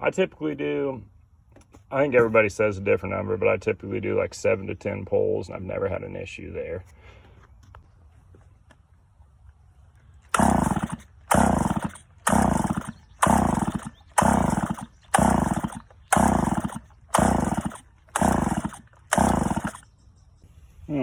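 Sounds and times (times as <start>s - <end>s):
chainsaw starter cord pulls: 10.3s - 19.8s.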